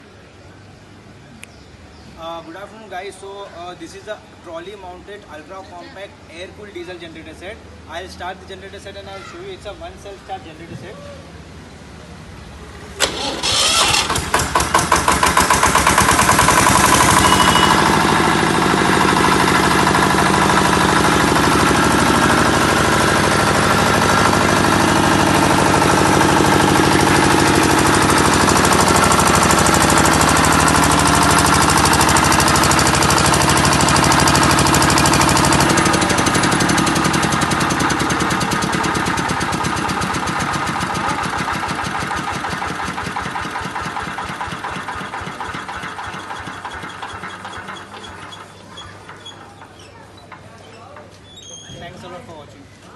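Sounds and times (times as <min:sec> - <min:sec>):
diesel generator running: 0:11.8 - 0:52.9
starter motor cranking: 0:13.0 - 0:50.6.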